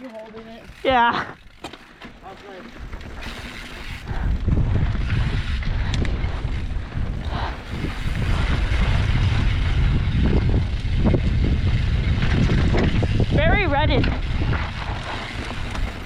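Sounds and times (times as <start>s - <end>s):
tyre and trail noise: 0.0s - 16.0s
wind buffeting microphone: 2.7s - 16.0s
faint clicks: 5.6s - 6.2s.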